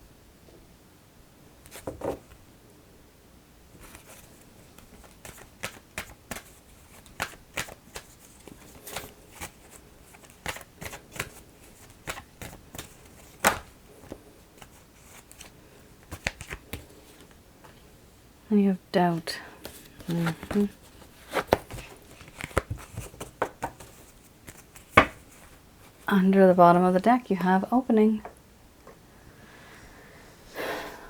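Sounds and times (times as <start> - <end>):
cards being shuffled: 3.8 - 17.3, 19.6 - 26.1.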